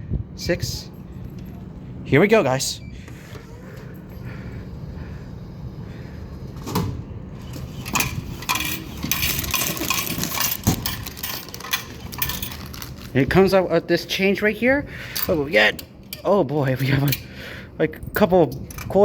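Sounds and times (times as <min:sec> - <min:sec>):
vending machine humming: 0:00.0 - 0:19.0
coins jingling into change return: 0:07.8 - 0:13.2, 0:15.1 - 0:15.8.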